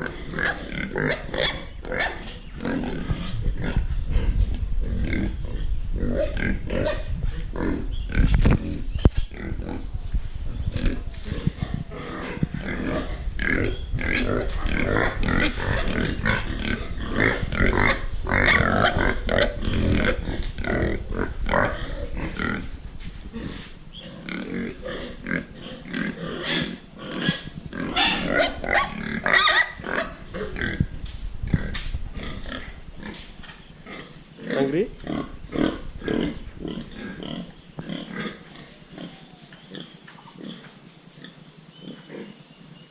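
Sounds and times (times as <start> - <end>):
pigs grunting and squealing: 0.0 - 9.9, 10.6 - 30.9, 33.8 - 42.4
low rumble: 1.6 - 23.9.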